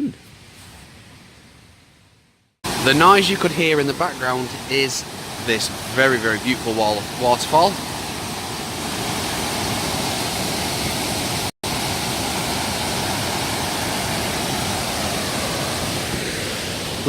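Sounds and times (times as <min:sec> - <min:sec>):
waterfall rushing: 0:02.7 - 0:17.0.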